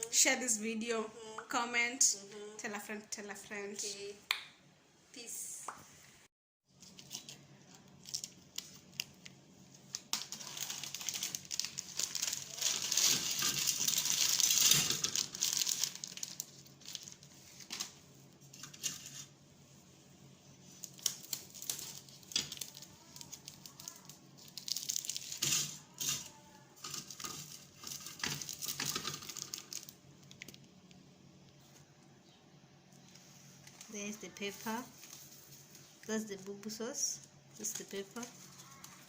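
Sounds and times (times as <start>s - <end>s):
plastic packets crinkling and tearing: 6.7s - 18.0s, 20.6s - 31.0s.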